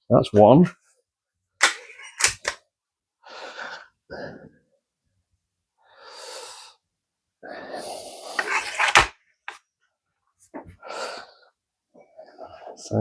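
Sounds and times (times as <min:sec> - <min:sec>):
air rifle latch clicks: 0:01.6 - 0:02.6.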